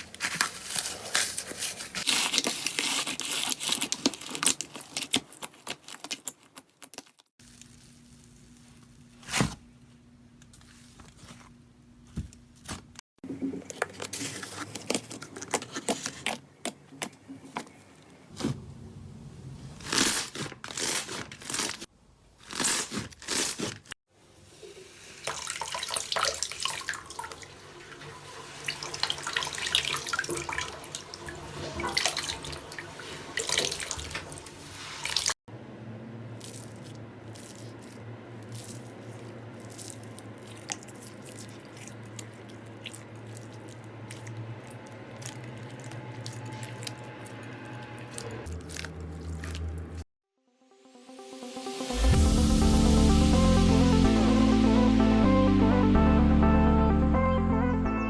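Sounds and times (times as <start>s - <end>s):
slime squelching and crackling: 36.4s - 50.0s.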